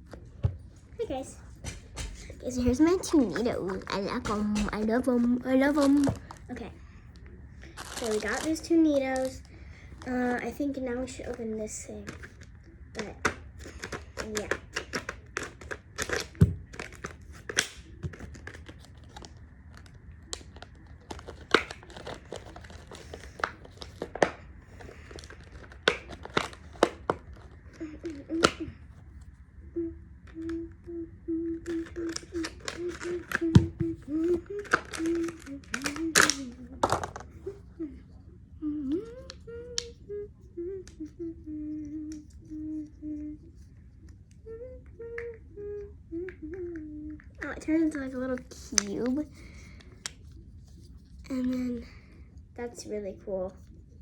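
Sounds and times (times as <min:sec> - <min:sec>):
packaging crinkling and tearing: 0:02.8 - 0:06.6, 0:07.6 - 0:10.4, 0:12.0 - 0:28.6, 0:31.6 - 0:37.2
girl humming: 0:27.6 - 0:49.4.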